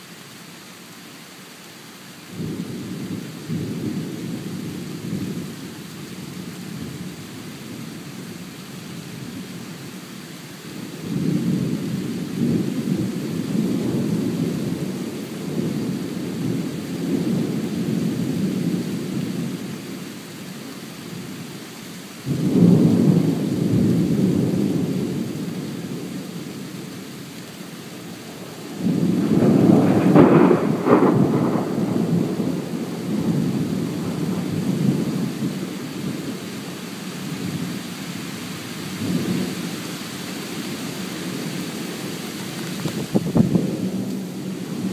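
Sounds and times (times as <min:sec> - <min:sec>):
rain hissing: 0:00.0 - 0:44.9
thunder rumbling: 0:22.3 - 0:26.5, 0:28.1 - 0:36.4, 0:42.6 - 0:44.9.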